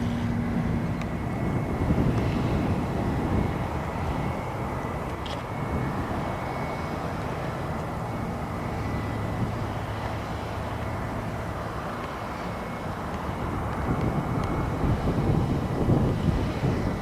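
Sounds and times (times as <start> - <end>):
aircraft engine drone: 0.0 - 17.0.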